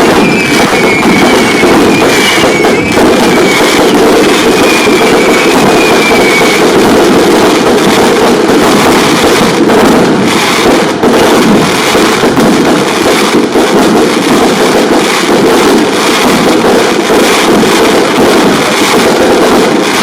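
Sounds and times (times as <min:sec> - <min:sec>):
falling firework whistle: 0:00.0 - 0:14.0
fireworks crackling and blasts: 0:00.0 - 0:20.0.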